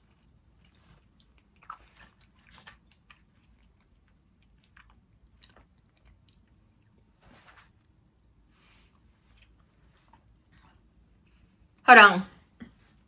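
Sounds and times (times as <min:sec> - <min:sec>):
person chewing food: 0:00.1 - 0:07.2.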